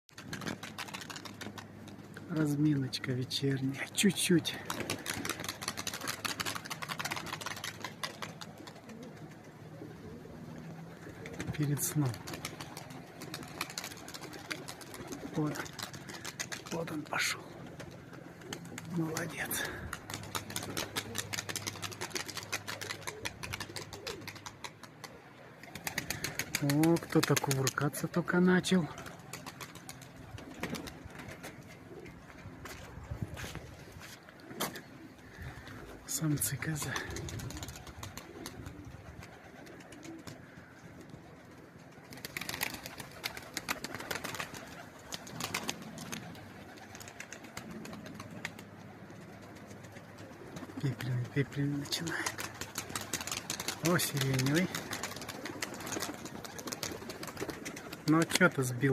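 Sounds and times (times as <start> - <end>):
pigeons clapping wings: 0.1 - 58.9.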